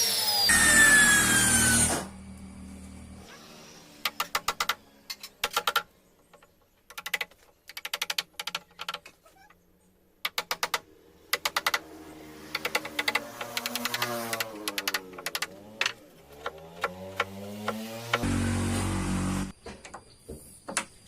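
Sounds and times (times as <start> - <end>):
rapid mechanical clicking of tool: 10.2 - 11.9, 12.5 - 16.0.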